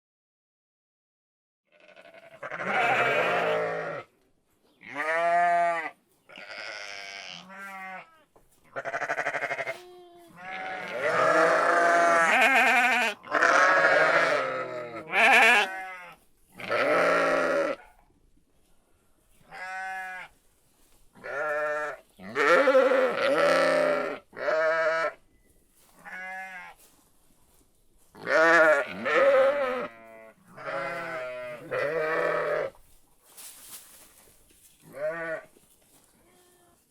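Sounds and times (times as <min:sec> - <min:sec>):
sheep bleating: 0:01.7 - 0:04.1, 0:04.8 - 0:17.9, 0:19.4 - 0:20.3, 0:21.2 - 0:25.2, 0:26.0 - 0:26.8, 0:28.2 - 0:32.8, 0:34.8 - 0:35.5.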